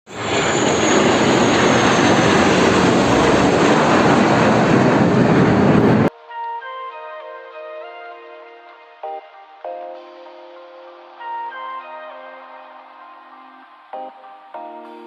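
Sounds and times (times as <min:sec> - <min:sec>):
high engine whine: 0:00.1 - 0:06.1
jet engines roaring: 0:00.1 - 0:06.1
soft music with held notes: 0:06.1 - 0:15.0.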